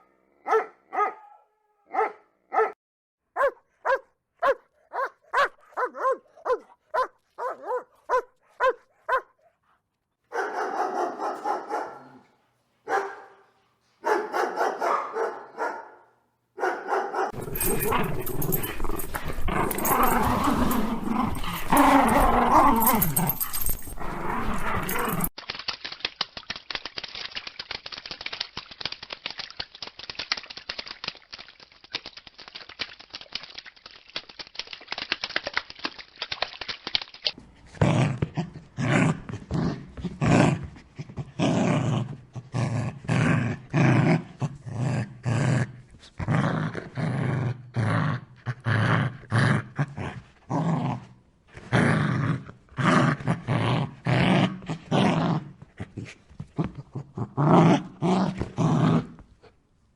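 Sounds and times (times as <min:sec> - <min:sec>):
dog barking: 0:00.4 - 0:02.8, 0:03.4 - 0:09.4, 0:10.3 - 0:18.0
dog growling: 0:17.3 - 0:25.3, 0:37.6 - 0:59.2.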